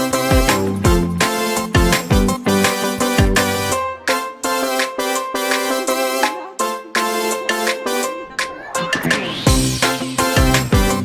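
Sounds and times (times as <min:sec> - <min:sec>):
afrobeat music with kick drums: 0:00.0 - 0:11.0.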